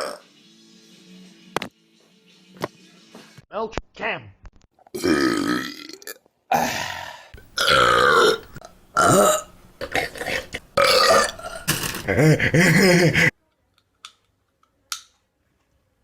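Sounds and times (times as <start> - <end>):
loud human burps: 0.0 - 0.2, 4.9 - 13.3.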